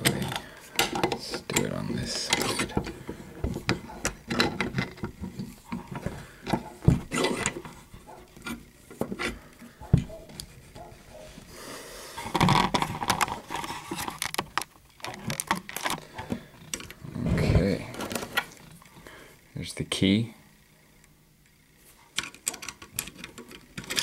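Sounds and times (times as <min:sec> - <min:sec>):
metal lock clicking and scraping: 0:00.0 - 0:03.0, 0:03.6 - 0:10.9, 0:22.2 - 0:24.0.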